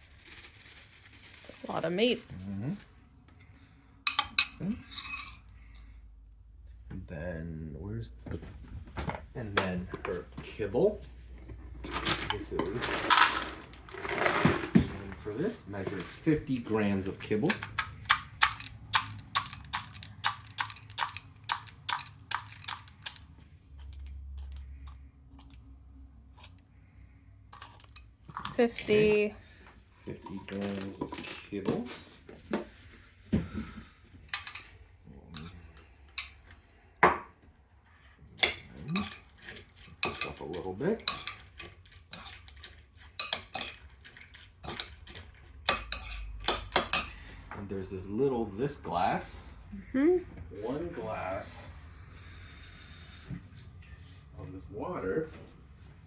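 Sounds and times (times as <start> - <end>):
utensil clinking and scraping bowl: 1.2 - 5.8, 9.6 - 26.7, 27.4 - 32.7, 34.2 - 36.8, 37.9 - 49.4.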